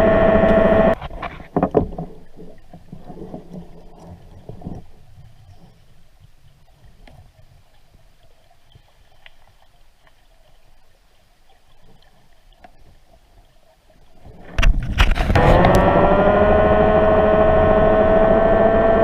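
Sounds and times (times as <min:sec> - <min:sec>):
boat low rumble: 0:00.0 - 0:19.0
sudden loud noise: 0:15.0 - 0:19.0.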